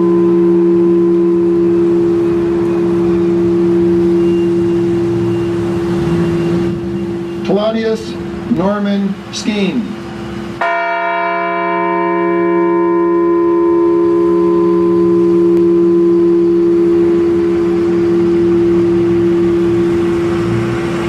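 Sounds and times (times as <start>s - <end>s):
bell tolling: 0.0s - 7.8s, 10.6s - 20.5s.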